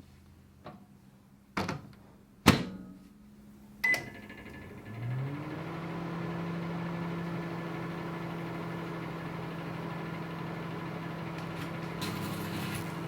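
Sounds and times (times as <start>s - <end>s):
microwave oven humming: 3.3s - 13.0s.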